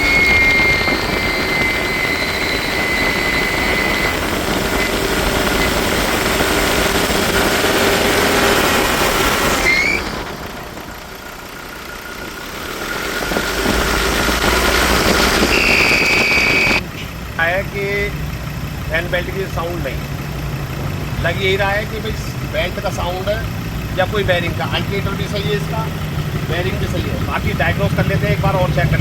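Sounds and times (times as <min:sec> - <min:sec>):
diesel engine revving: 0:00.0 - 0:29.0
man talking: 0:17.4 - 0:18.2, 0:18.9 - 0:20.1, 0:21.2 - 0:29.0.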